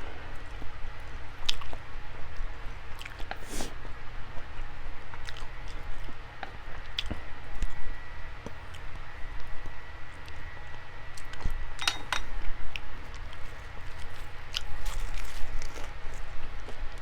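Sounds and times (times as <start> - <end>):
person chewing food: 1.4 - 7.8, 8.4 - 10.4, 12.7 - 17.0.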